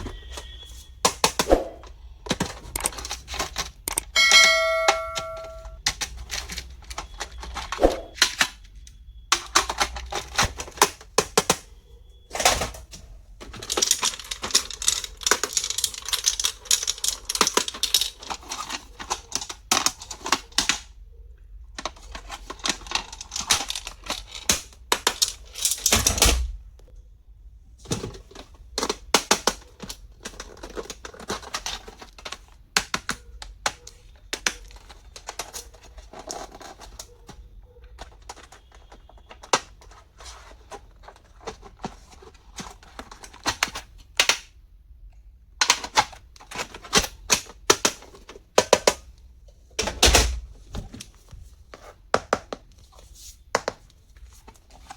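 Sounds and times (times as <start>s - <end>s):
plastic rustling and scraping: 0.0s - 4.2s, 5.6s - 21.0s, 21.6s - 26.2s, 27.7s - 44.2s, 45.6s - 54.9s
plastic stationery clicking and tapping: 0.2s - 4.2s, 4.8s - 11.6s, 13.4s - 20.9s, 21.8s - 25.8s, 27.9s - 44.5s, 45.6s - 49.1s.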